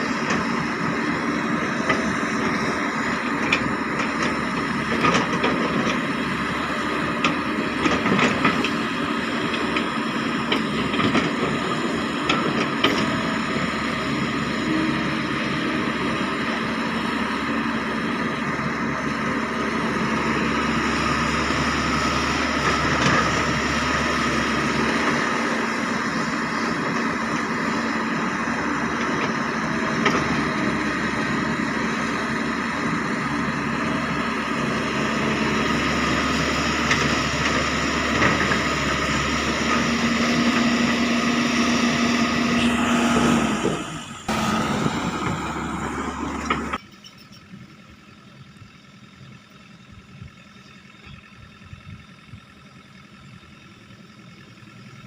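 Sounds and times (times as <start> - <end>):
excavator engine running: 0.0 - 55.0.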